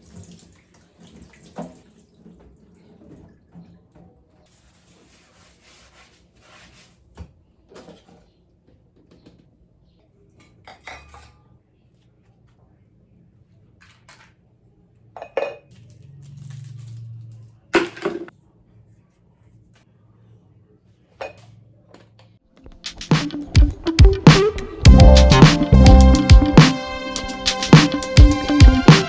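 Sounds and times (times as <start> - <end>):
dishes and cutlery clinking: 10.4 - 11.5, 15.2 - 15.9, 21.2 - 21.6.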